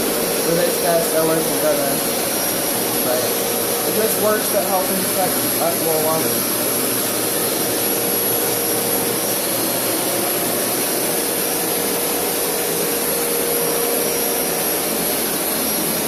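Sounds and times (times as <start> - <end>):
carpet cleaning machine running: 0.0 - 16.0
thin high whine: 0.0 - 16.0.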